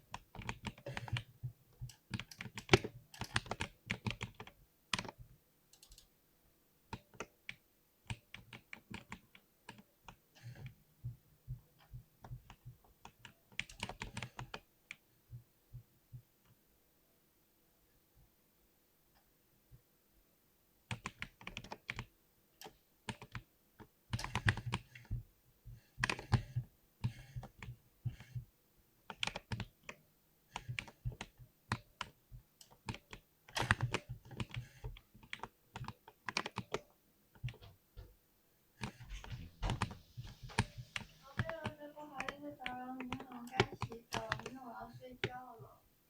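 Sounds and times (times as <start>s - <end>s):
mechanical keyboard typing: 0.1s - 6.1s, 6.9s - 10.7s, 12.2s - 14.7s, 20.9s - 22.1s, 23.1s - 23.5s, 24.1s - 25.1s, 29.1s - 30.0s, 30.6s - 37.6s, 38.8s - 45.5s.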